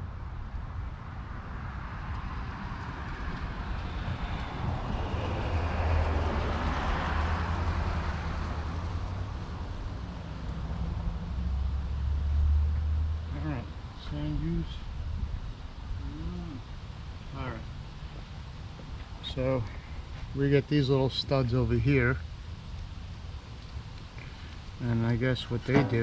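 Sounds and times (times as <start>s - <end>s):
vehicle passing by: 1.6s - 13.6s.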